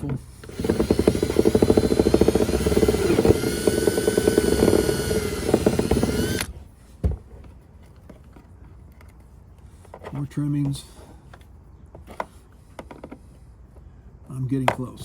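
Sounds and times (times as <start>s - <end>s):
power drill cutting plastic: 0.4s - 6.5s.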